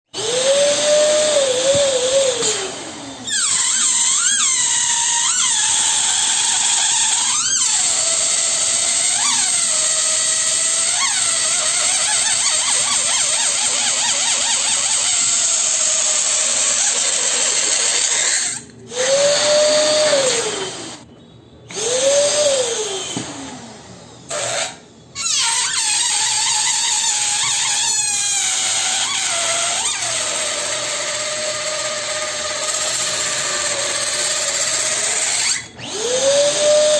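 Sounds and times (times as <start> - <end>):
electric balloon pump motor: 0.1 - 21.1, 21.7 - 36.9
wavering squeaky whistle: 3.2 - 8.3.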